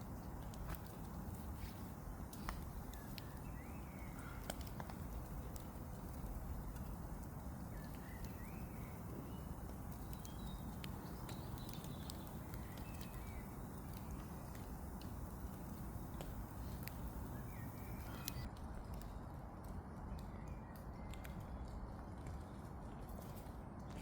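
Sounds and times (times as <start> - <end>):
steady low rush: 0.0 - 18.5
sharp clicks and ticks: 0.2 - 18.5.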